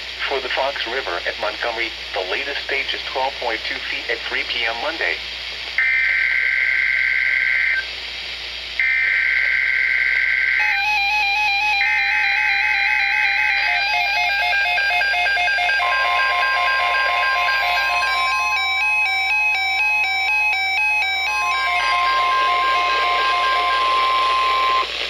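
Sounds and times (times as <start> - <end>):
buzzing two-tone data screech: 8.8 - 24.9
alert radios beeping: 8.8 - 25.0
steady warning alarm tone: 8.8 - 25.0.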